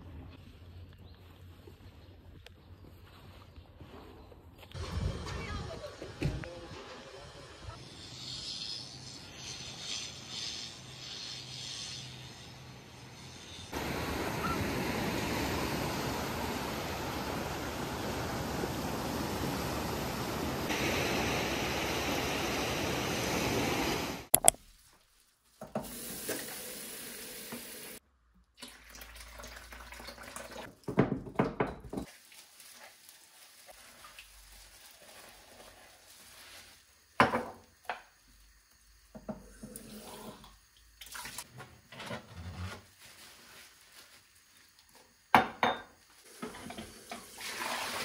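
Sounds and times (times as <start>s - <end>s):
tap water running into sink: 25.7s - 28.0s, 28.6s - 31.0s, 46.3s - 48.0s
dishes clinking and knocking: 30.9s - 32.1s, 37.2s - 38.0s, 45.4s - 47.3s.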